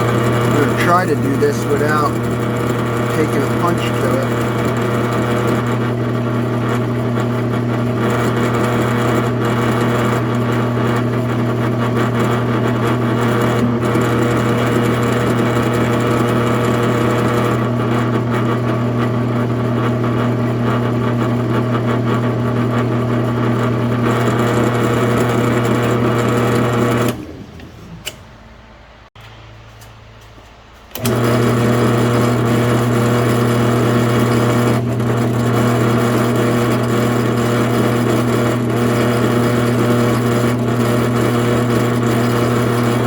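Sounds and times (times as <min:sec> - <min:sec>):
drill press motor running: 0:00.0 - 0:28.9, 0:30.9 - 0:43.0.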